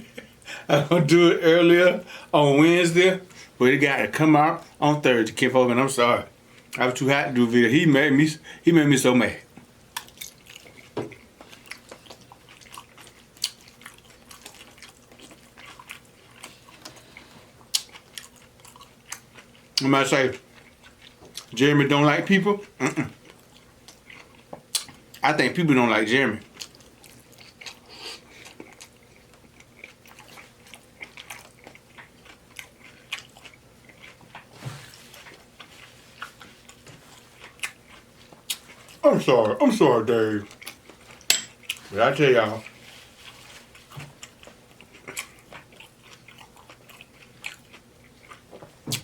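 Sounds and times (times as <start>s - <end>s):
wet chewing and mouth smacking: 9.6s - 21.6s, 22.6s - 25.2s, 26.4s - 39.6s, 40.4s - 49.0s.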